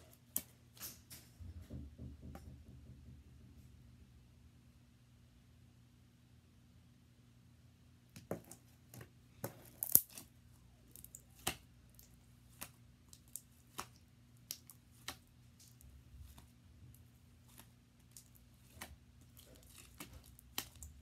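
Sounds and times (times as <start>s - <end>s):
slime squished by hand: 11.0s - 21.0s.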